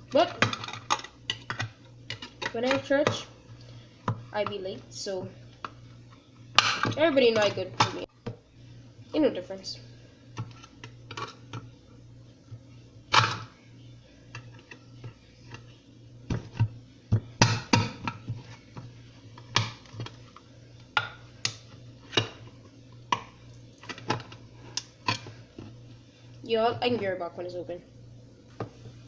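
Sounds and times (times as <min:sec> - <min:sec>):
faint low hum: 0:00.0 - 0:29.0
kitchen items clicking and knocking: 0:00.1 - 0:03.3.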